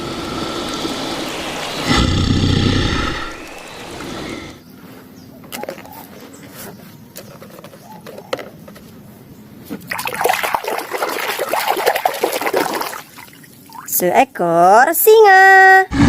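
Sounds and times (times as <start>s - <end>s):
water splashing and trickling: 9.9s - 14.2s.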